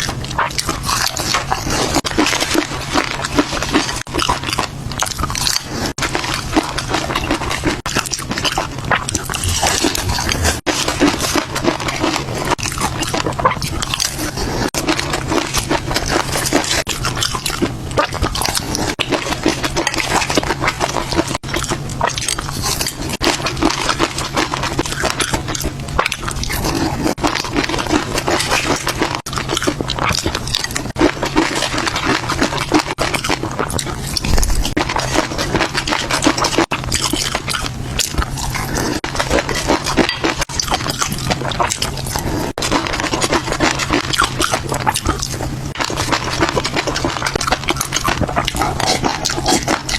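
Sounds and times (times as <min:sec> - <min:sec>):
steady low hum: 0:00.0 - 0:49.9
wet chewing and mouth smacking: 0:00.0 - 0:49.9.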